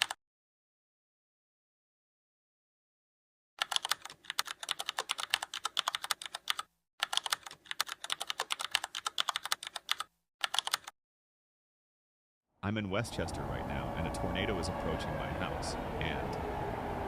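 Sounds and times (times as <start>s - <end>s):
keyboard typing: 3.6s - 11.0s.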